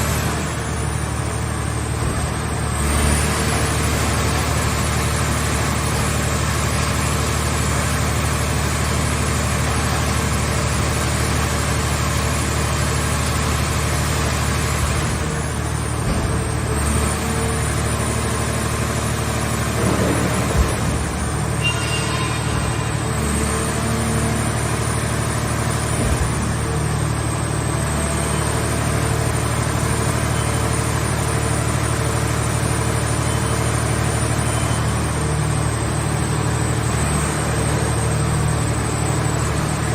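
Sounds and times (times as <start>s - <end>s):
short clunks: 16.0s - 16.6s.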